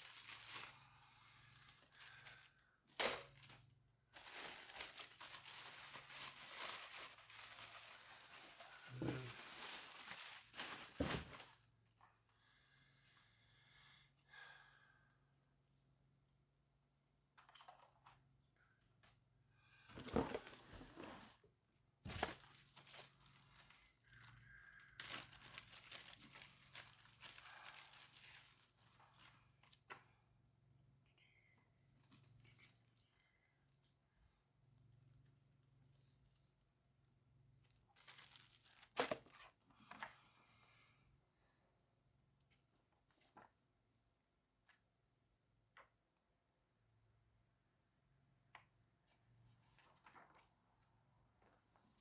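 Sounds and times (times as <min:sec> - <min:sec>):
plastic bag crinkling: 0:00.0 - 0:11.7, 0:22.0 - 0:29.8, 0:32.1 - 0:33.2, 0:37.8 - 0:39.6.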